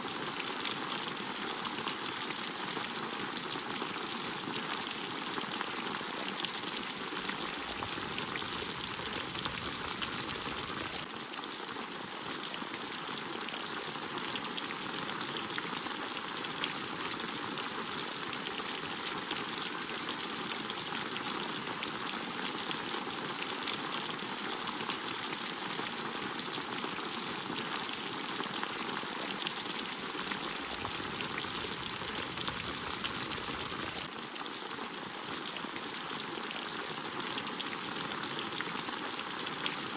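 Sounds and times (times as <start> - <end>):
steady rain falling: 6.9 - 11.1, 28.9 - 34.1.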